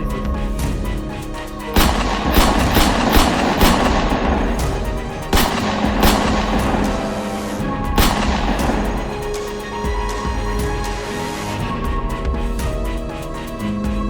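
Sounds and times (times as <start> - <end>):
background music: 0.0 - 14.0
video game gunshots: 1.8 - 9.5.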